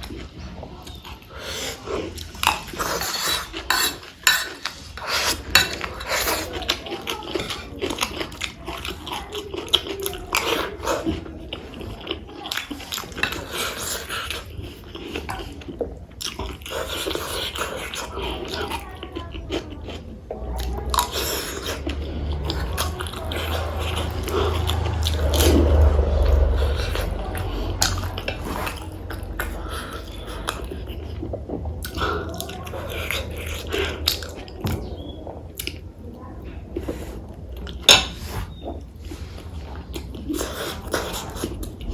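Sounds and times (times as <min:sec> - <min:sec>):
person chewing food: 0:00.0 - 0:41.9.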